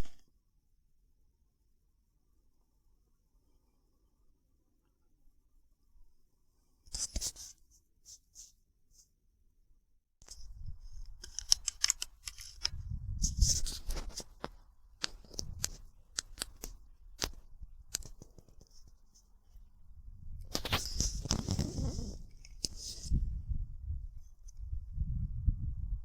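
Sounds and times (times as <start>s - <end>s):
sharp clicks and taps: 14.2s - 18.8s.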